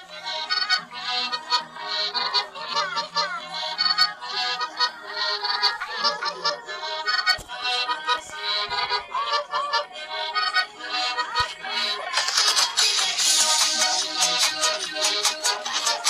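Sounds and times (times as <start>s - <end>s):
reedy accordion-like melody: 0.0s - 12.0s.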